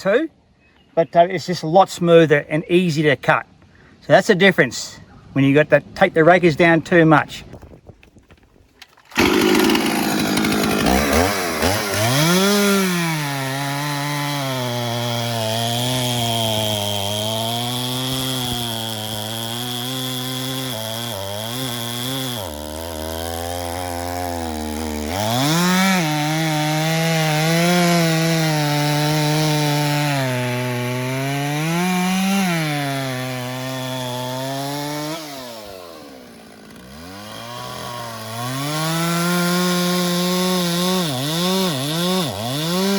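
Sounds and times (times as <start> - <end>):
chainsaw cutting log: 7.5 - 42.9
chainsaw idling: 8.8 - 42.9.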